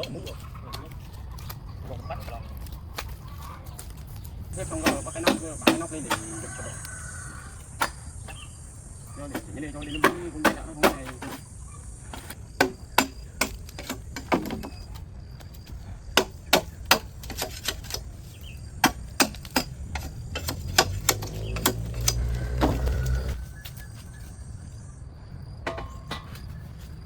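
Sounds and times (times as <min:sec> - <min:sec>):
hammer blows: 0:04.6 - 0:06.8, 0:18.8 - 0:23.6.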